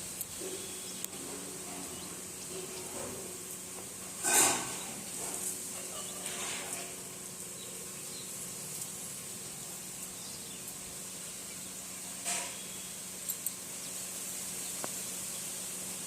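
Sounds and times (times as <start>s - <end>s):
steady high-pitched hiss: 0.0s - 16.0s.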